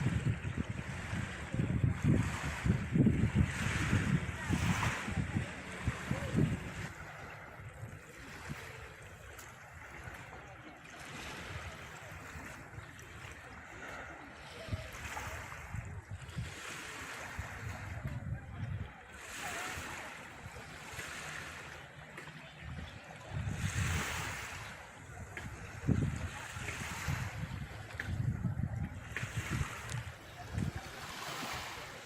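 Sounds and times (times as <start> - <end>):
wind rumble on microphone: 0.0 - 10.5, 11.1 - 21.6, 22.5 - 32.0
sea waves washing onto beach: 0.0 - 32.0.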